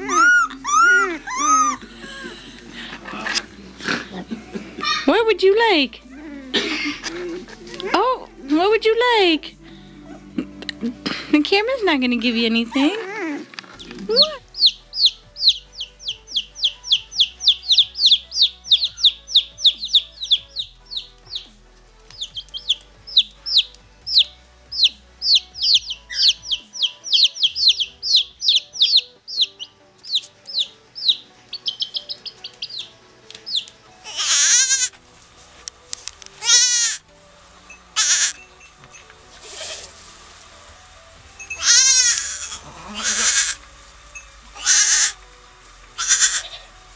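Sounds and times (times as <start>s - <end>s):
rapid high chirping: 0.0s - 4.0s, 11.0s - 32.9s, 41.3s - 46.9s
harsh bleat-like calls: 34.1s - 34.9s, 36.4s - 37.0s, 38.0s - 38.4s, 41.6s - 43.6s, 44.6s - 45.2s, 46.0s - 46.8s.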